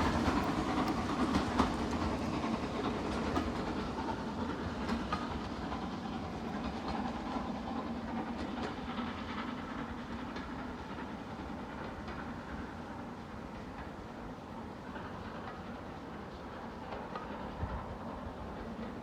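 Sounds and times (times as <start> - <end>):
train rumble: 0.0 - 19.0
train wheels clicking over rail joints: 0.0 - 19.0.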